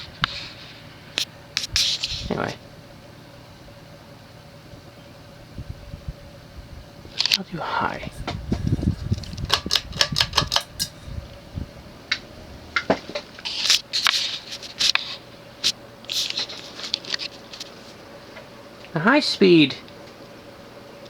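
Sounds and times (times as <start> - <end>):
ceiling fan motor hum: 0.0 - 21.0
pull-chain switch clicks and rattles: 9.2 - 11.0.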